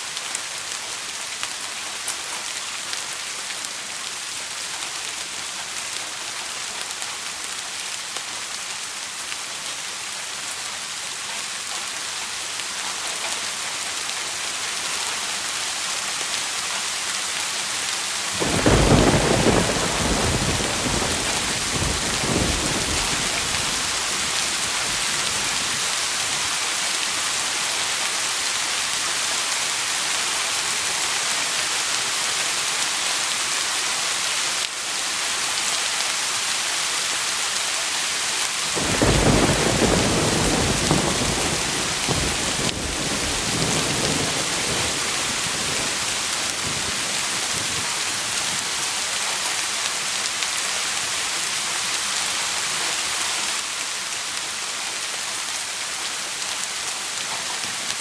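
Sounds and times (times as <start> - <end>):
steady rain falling: 0.0 - 58.0
thunder rumbling: 18.4 - 25.9, 38.8 - 48.6.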